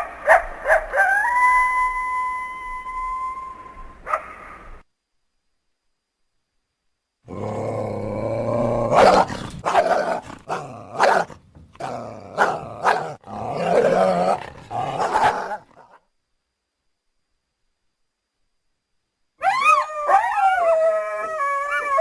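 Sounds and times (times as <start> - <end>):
wolf growling: 7.3 - 16.0
wolf snarling: 7.3 - 16.0.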